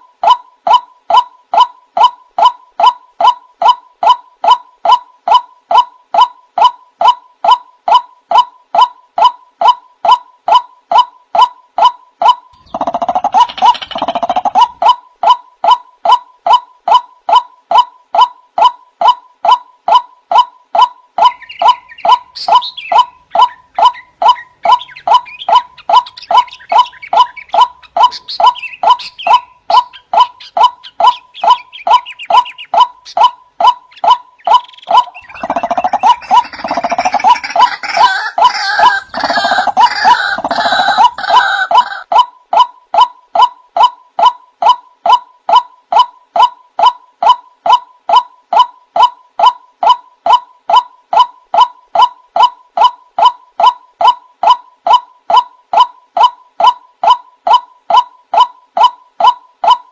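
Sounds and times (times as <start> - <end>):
waterhen calling: 20.8 - 42.2.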